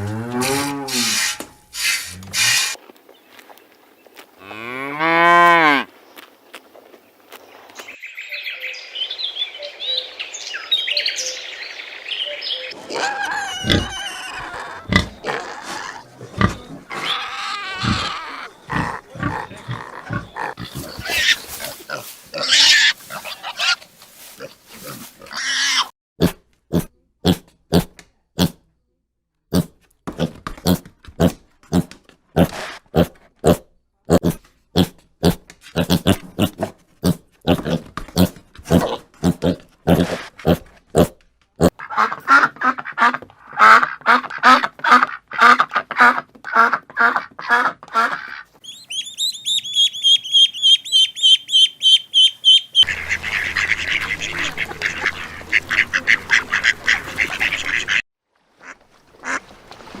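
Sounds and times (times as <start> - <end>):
pigs grunting and squealing: 12.7 - 23.8, 24.4 - 28.6, 29.5 - 42.6.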